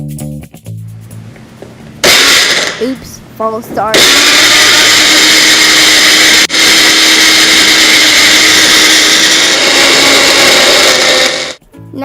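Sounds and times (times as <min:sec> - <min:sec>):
blender running: 0:02.0 - 0:03.0, 0:03.9 - 0:11.6.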